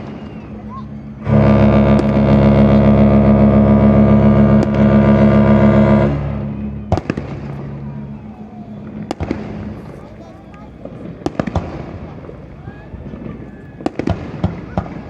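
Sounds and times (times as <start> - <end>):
deep ship horn blast: 0.0 - 11.9
firework bangs: 4.4 - 15.0.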